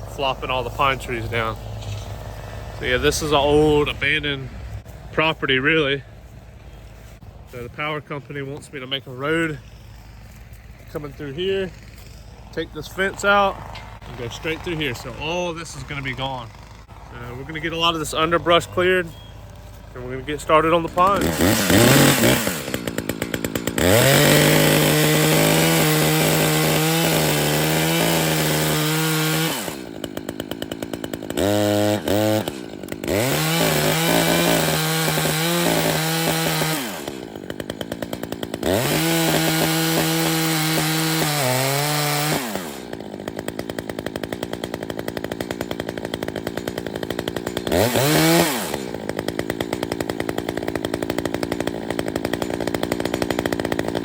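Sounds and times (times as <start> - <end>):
chainsaw cutting wood: 0.0 - 54.0.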